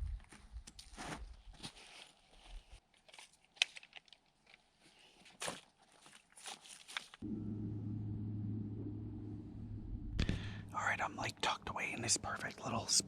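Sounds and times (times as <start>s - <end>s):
footsteps crunching on forest floor: 0.1s - 3.3s, 5.3s - 7.2s
steady low hum: 7.2s - 13.0s.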